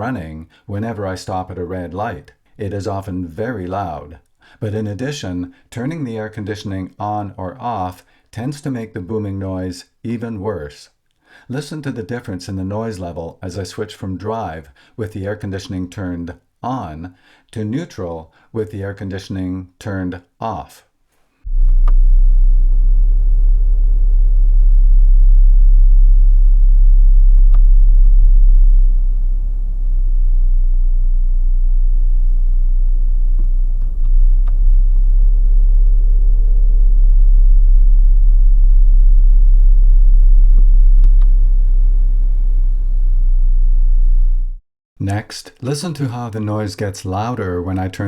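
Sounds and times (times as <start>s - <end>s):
deep engine rumble in cabin: 21.5s - 44.6s.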